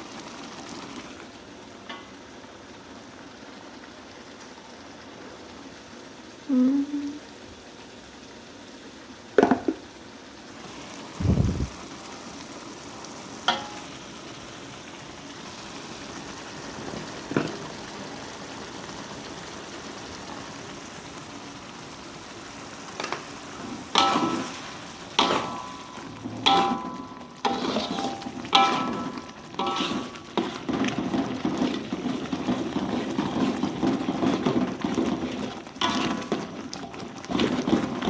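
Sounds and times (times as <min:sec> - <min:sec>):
fish sizzling in a pan: 0:00.0 - 0:38.0
metal spatula scraping a pan: 0:23.0 - 0:36.6.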